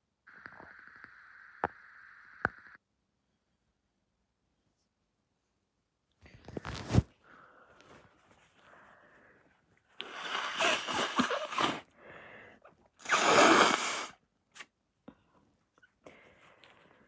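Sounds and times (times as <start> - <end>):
person blowing nose: 10.0 - 11.9, 13.0 - 14.2.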